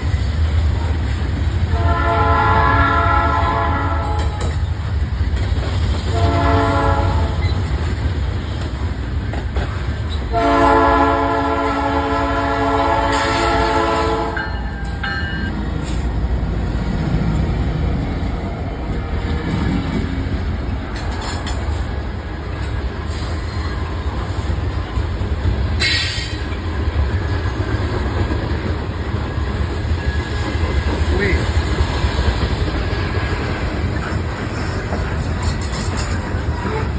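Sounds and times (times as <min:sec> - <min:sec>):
train rumble and wheel clatter: 0:00.0 - 0:36.9
locomotive horn blasts: 0:01.7 - 0:04.6, 0:06.1 - 0:07.6, 0:10.3 - 0:14.6.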